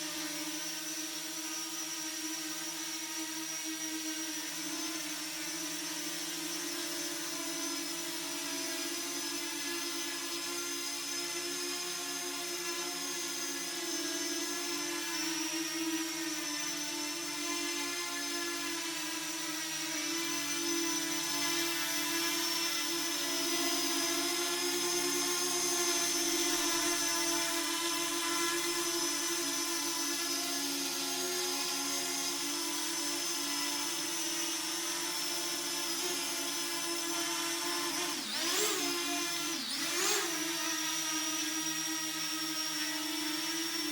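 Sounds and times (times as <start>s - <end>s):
drone propellers whining: 20.0s - 30.5s, 37.0s - 41.6s.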